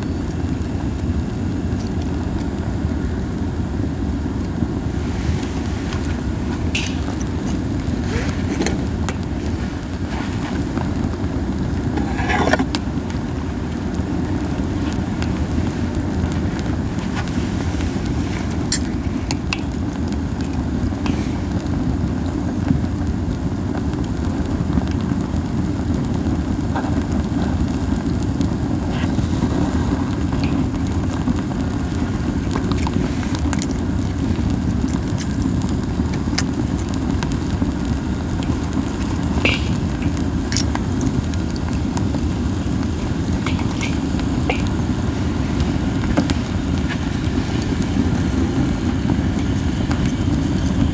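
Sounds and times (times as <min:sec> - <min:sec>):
flames and wind whooshing: 0:00.0 - 0:50.9
pine cones crackling and popping: 0:00.0 - 0:50.9.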